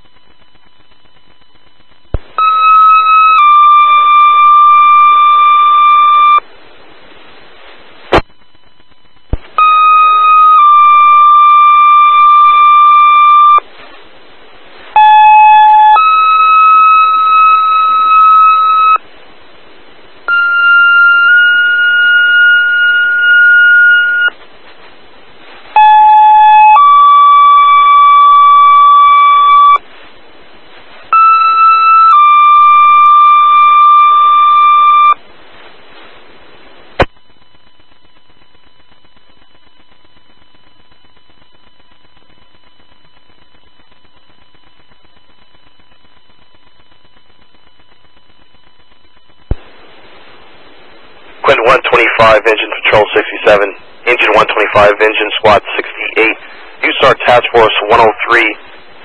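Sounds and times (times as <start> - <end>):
radio hiss: 0.0 - 2.5, 34.9 - 59.0
two-tone radio paging tones: 0.0 - 6.4, 8.1 - 13.7, 15.0 - 19.0, 20.3 - 24.4, 25.7 - 29.8, 31.1 - 35.2, 37.0 - 49.6, 51.4 - 58.6.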